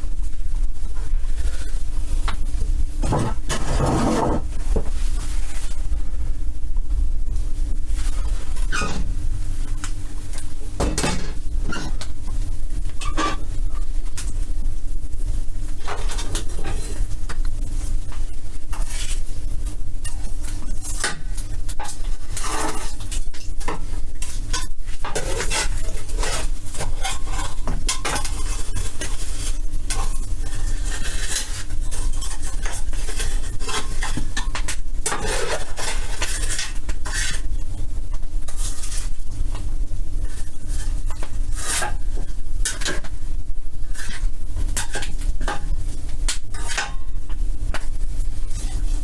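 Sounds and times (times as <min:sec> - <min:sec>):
steady low hum: 0:00.0 - 0:49.0
metallic clattering and scraping: 0:03.0 - 0:05.9.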